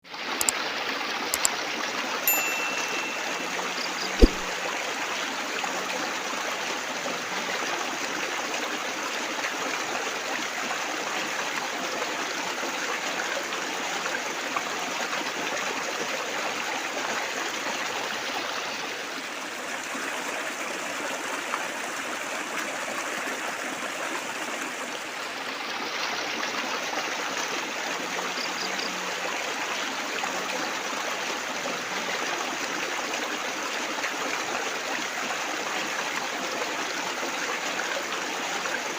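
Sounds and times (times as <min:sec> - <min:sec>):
water trickling and splashing: 0:00.0 - 0:38.9.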